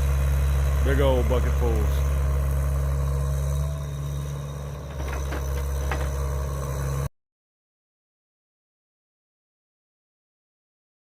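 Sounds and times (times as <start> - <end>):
heavy machine engine running: 0.0 - 7.1
knocks: 4.9 - 6.3.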